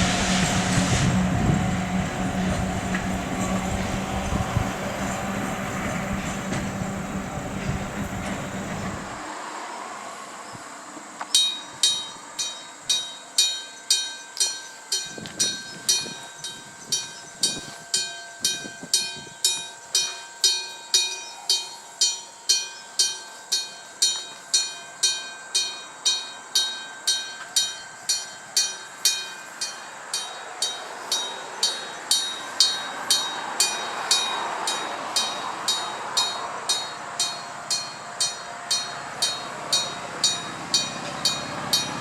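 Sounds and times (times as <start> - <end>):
approaching train rushing: 0.0 - 12.4, 25.0 - 42.0
level crossing gong ringing: 20.1 - 42.0.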